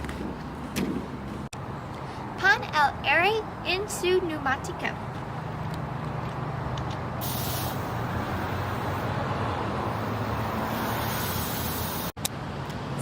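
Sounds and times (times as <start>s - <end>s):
air hose hissing: 7.2s - 12.2s.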